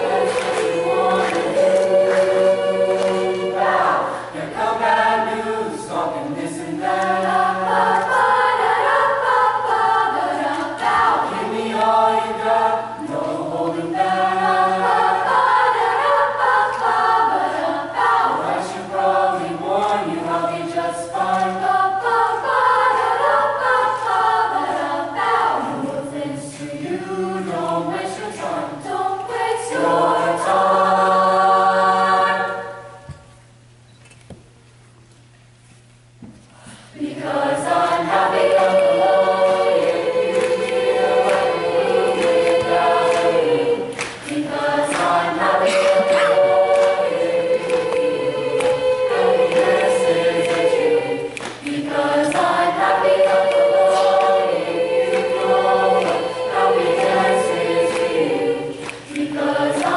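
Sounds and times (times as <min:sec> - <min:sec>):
choir singing: 0:00.0 - 0:33.2, 0:37.0 - 0:59.9.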